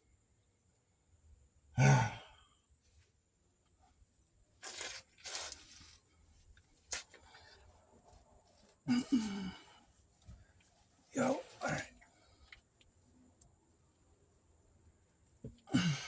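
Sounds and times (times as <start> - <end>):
man grunting: 1.8 - 2.3, 15.7 - 16.0.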